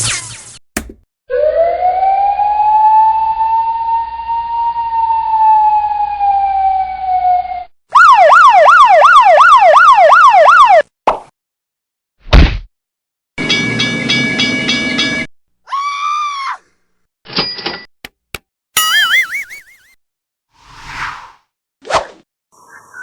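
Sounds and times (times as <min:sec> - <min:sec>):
siren fast yelp: 0:01.3 - 0:10.8
siren slow wail: 0:01.3 - 0:10.8.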